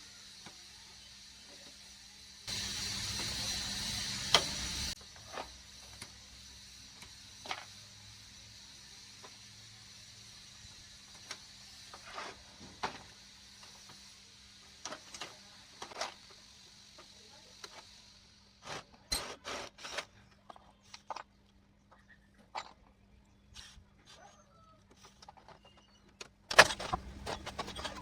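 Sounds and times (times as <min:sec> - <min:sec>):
hiss: 0:00.0 - 0:18.8.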